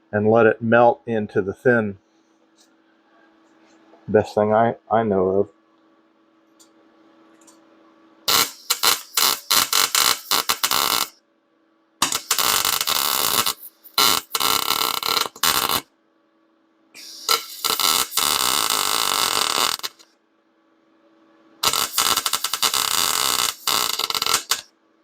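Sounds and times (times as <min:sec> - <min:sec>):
welder arc crackling: 0:08.3 - 0:11.2, 0:12.0 - 0:15.9, 0:17.0 - 0:20.1, 0:21.6 - 0:24.7.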